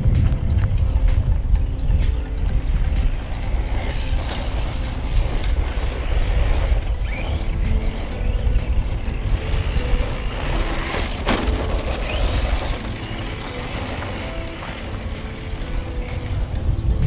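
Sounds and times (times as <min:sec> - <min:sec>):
toy car electric motor whining: 0:01.4 - 0:17.0.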